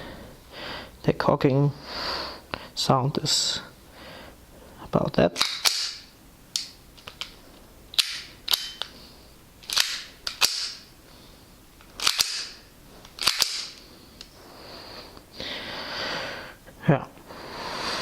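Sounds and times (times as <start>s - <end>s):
pistol slide metal clicks: 5.4s - 7.4s, 8.0s - 9.0s, 9.6s - 10.9s, 12.0s - 14.3s.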